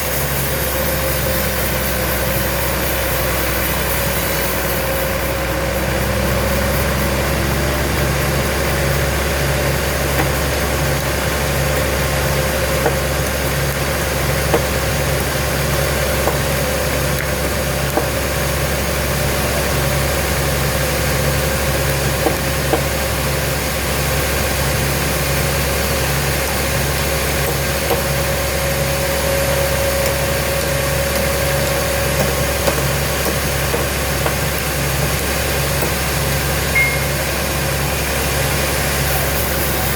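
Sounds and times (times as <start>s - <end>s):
low pulsing throb: 0.0s - 18.6s
held whine: 0.0s - 39.9s
sawmill machinery drone: 0.0s - 39.9s.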